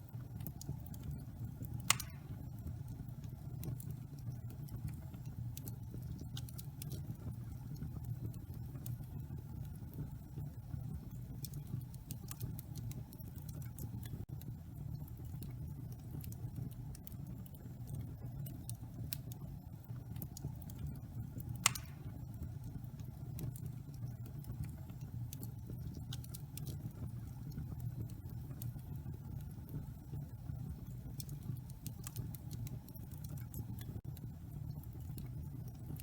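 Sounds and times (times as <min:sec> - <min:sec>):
fire crackling: 0:00.0 - 0:36.0
wood fire pop: 0:01.7 - 0:02.6, 0:21.4 - 0:22.3
fire rumbling: 0:10.6 - 0:36.0.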